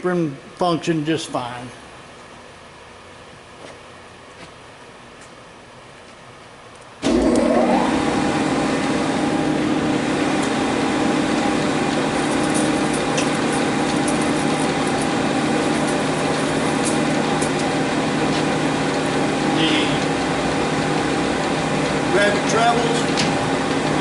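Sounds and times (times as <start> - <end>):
lathe gear whine: 7.0 - 24.0.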